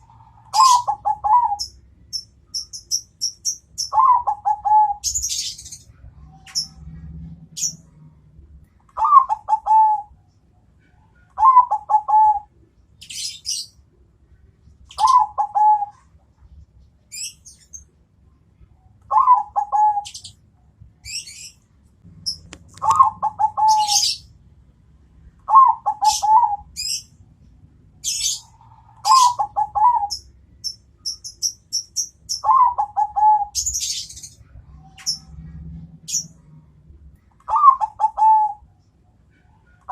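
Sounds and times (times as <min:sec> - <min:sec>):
dove cooing: 0:00.0 - 0:01.8, 0:03.8 - 0:07.8, 0:09.0 - 0:10.2, 0:11.4 - 0:12.6, 0:14.9 - 0:16.1, 0:19.1 - 0:20.3, 0:22.2 - 0:24.2, 0:25.4 - 0:27.1, 0:28.0 - 0:30.3, 0:32.4 - 0:36.3, 0:37.4 - 0:38.7
small birds chirping: 0:00.0 - 0:24.4, 0:25.2 - 0:39.9.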